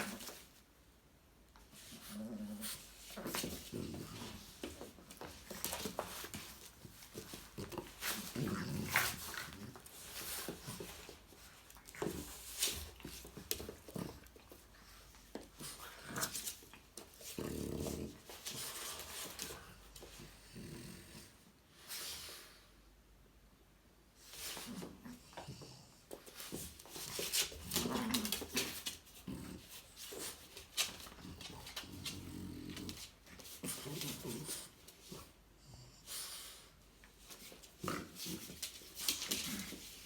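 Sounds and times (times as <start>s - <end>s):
dogs scuffling and clicking: 0.0s - 0.6s, 1.6s - 20.4s, 24.3s - 35.3s, 37.0s - 40.0s
dogs growling: 1.8s - 21.4s, 27.1s - 35.3s.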